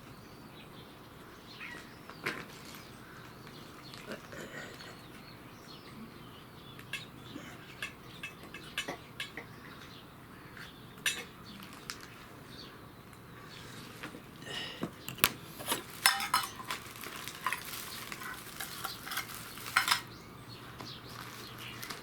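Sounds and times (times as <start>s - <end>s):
pet food dish clinking: 15.1s - 20.2s.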